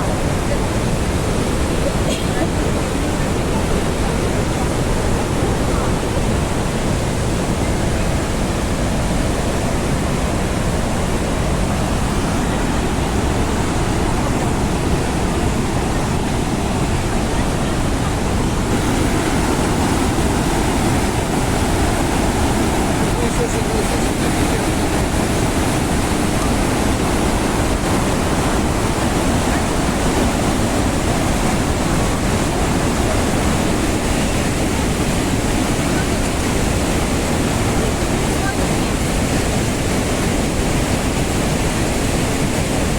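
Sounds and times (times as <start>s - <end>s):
waterfall rushing: 0.0s - 42.9s.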